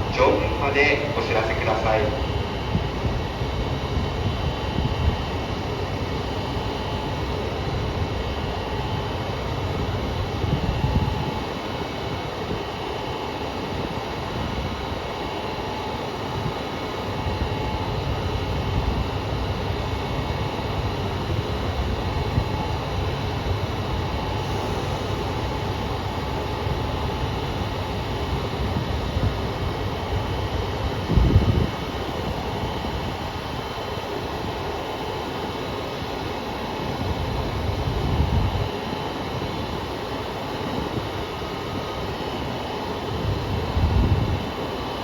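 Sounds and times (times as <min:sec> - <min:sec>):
diesel railcar engine rumble: 0:00.0 - 0:12.3, 0:14.0 - 0:35.7
constant whine: 0:00.0 - 0:45.0.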